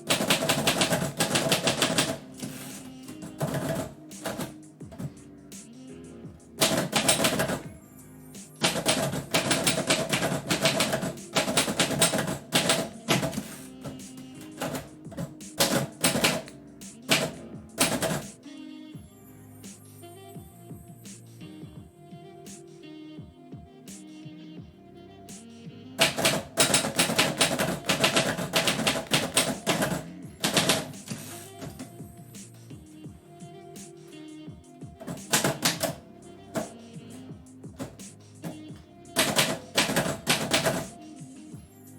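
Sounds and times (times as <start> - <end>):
typewriter keys clacking: 0.0 - 5.1, 6.6 - 7.7, 8.6 - 16.5, 17.1 - 18.4, 26.0 - 31.9, 35.0 - 36.0, 37.8 - 38.6, 39.2 - 40.9
background music: 0.0 - 41.9
typewriter carriage sliding hiss: 0.3 - 4.5, 8.7 - 14.9, 26.1 - 31.8.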